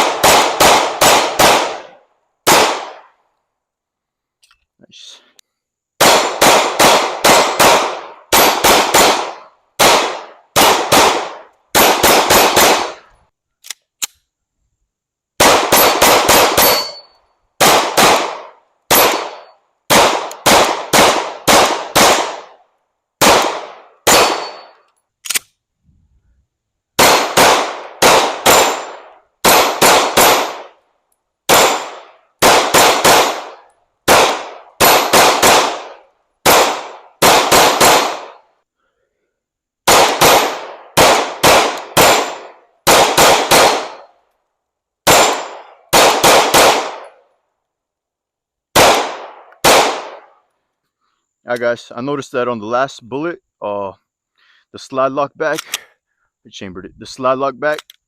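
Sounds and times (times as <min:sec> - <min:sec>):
pistol shots: 0:00.0 - 0:03.1, 0:06.0 - 0:13.1, 0:15.4 - 0:22.6, 0:23.2 - 0:25.4, 0:27.0 - 0:30.8, 0:31.5 - 0:38.4, 0:39.8 - 0:44.1, 0:45.0 - 0:47.2, 0:48.7 - 0:50.3.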